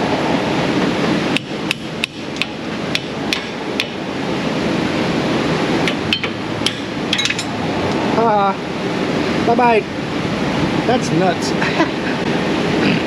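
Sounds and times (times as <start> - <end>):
hammer striking steel: 1.4 - 4.0, 5.8 - 7.5.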